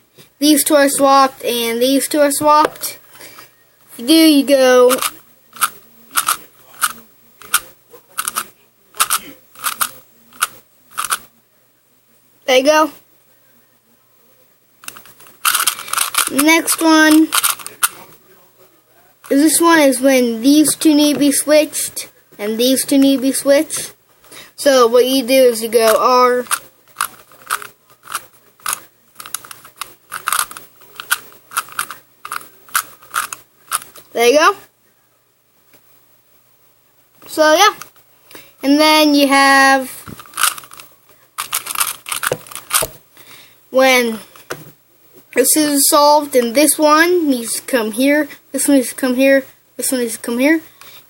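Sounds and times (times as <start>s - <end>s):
puzzle cube turning clacks: 4.9s - 11.2s, 14.8s - 18.0s, 25.8s - 34.0s, 40.1s - 42.9s.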